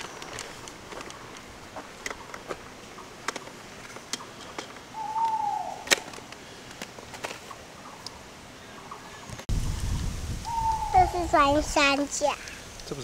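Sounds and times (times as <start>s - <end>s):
hoot-like bird call: 4.9s - 6.0s, 10.5s - 11.2s.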